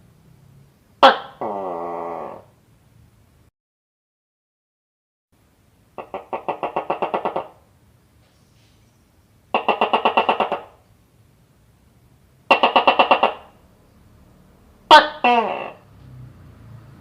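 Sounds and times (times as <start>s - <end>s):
gecko chirping: 6.0s - 7.6s, 9.6s - 10.8s.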